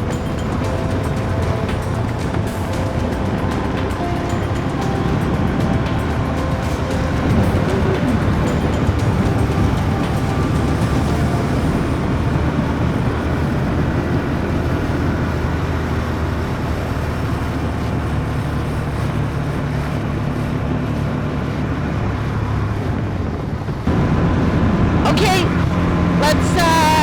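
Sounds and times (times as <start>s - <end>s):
rush of noise: 23.9s - 27.0s.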